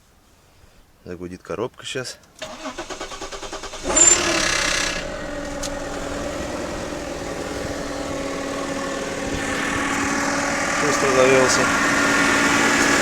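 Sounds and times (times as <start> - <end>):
car engine starting and idling: 2.3 - 13.0
droning hum: 3.8 - 13.0.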